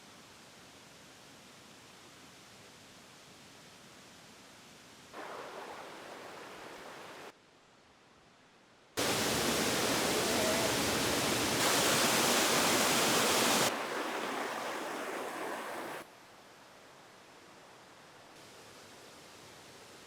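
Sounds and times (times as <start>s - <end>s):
steady rushing noise: 9.0s - 16.0s.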